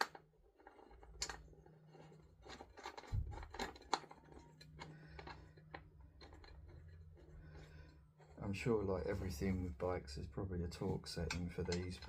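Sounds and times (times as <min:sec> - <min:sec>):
metal screws and tool clicking: 0:00.0 - 0:08.4
steady low hum: 0:00.7 - 0:12.0.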